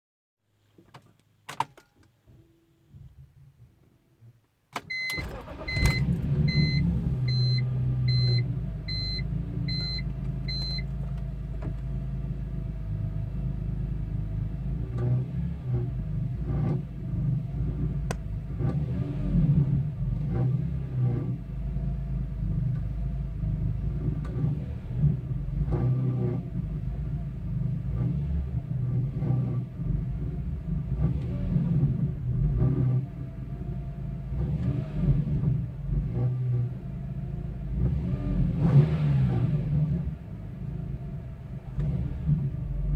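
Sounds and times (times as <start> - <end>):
dashboard warning chime beeping: 4.8 - 11.0
car engine cranking and idling: 4.8 - 42.9
exhaust rattling: 5.2 - 14.9.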